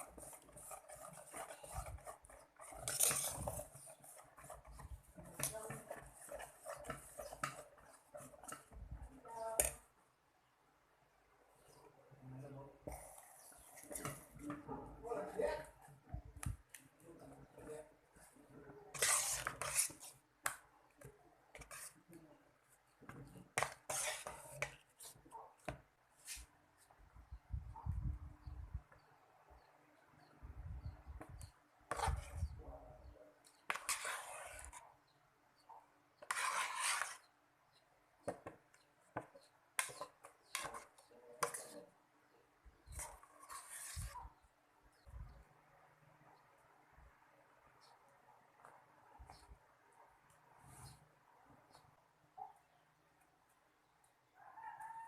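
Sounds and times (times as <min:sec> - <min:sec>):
utensil scraping a pot: 0:00.0 - 0:09.8, 0:12.8 - 0:14.7, 0:18.9 - 0:20.2, 0:21.5 - 0:22.1, 0:23.0 - 0:25.4, 0:31.4 - 0:32.5, 0:33.5 - 0:34.9, 0:36.2 - 0:37.3, 0:39.2 - 0:41.9, 0:42.9 - 0:44.3.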